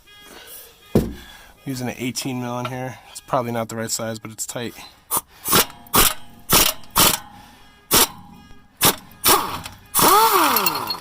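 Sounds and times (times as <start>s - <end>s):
ratchet wrench clicking: 5.5s - 7.2s, 8.8s - 11.0s.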